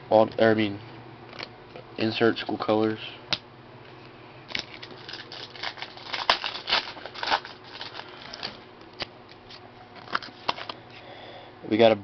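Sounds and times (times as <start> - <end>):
cards rustling: 4.5 - 10.8.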